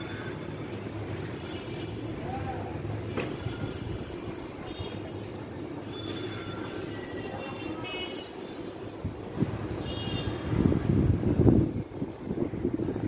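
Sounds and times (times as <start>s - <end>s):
wind rumbling on microphone: 8.9s - 13.0s.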